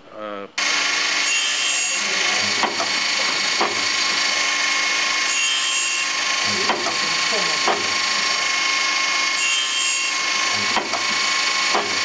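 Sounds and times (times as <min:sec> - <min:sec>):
grinding wheel harsh hiss: 0:00.6 - 0:12.0.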